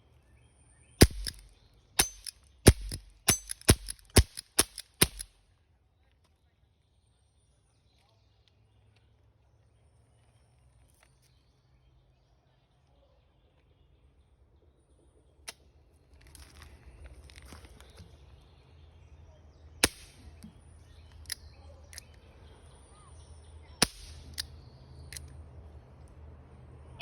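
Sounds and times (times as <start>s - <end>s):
air gun shots: 1.0s - 1.4s, 2.0s - 5.3s, 19.8s - 20.2s, 23.8s - 24.4s.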